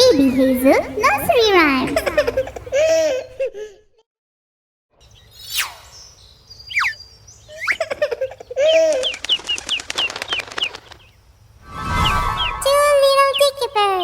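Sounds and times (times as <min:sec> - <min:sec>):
short bird chirps: 0:05.0 - 0:07.9
cartoon falling whistle: 0:05.4 - 0:06.1, 0:06.7 - 0:07.0, 0:07.6 - 0:07.8
rapid wing flutter: 0:08.7 - 0:12.7.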